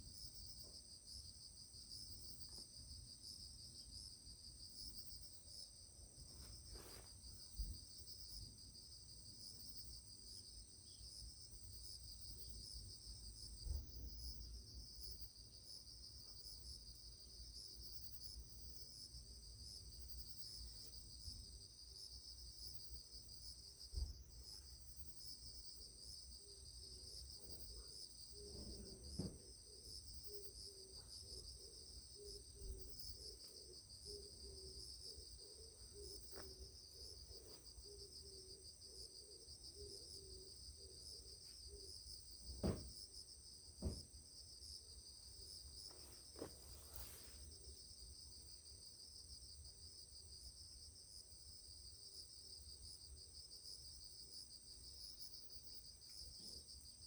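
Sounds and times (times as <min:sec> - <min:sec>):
trilling insects: 0:00.0 - 0:57.0
soft knocks: 0:28.5 - 0:29.4, 0:42.5 - 0:43.0, 0:43.8 - 0:44.1.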